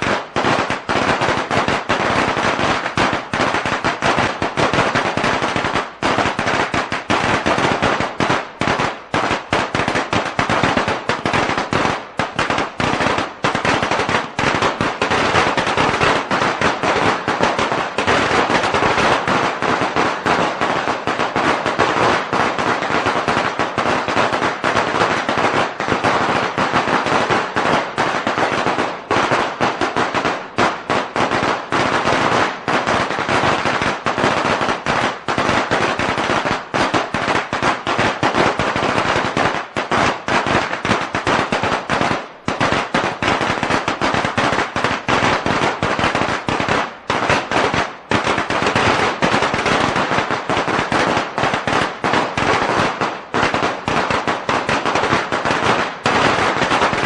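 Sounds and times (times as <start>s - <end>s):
firecrackers crackling: 0.0s - 57.0s.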